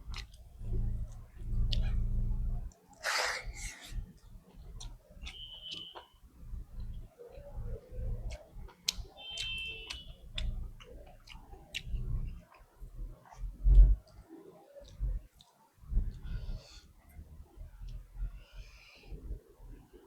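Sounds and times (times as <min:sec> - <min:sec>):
chewing and mouth smacks: 0:00.0 - 0:18.1
soft low thumps: 0:13.5 - 0:14.0.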